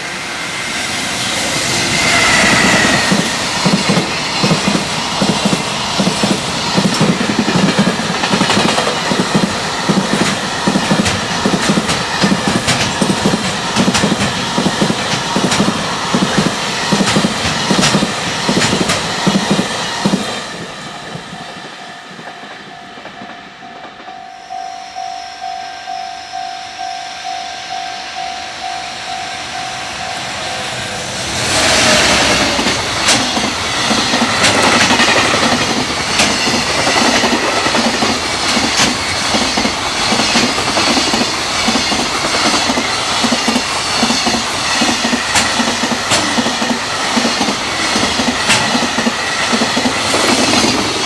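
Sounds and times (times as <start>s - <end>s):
freight train wheels clattering: 0.9s - 24.3s, 29.4s - 51.0s
level-crossing warning bell: 18.9s - 51.0s.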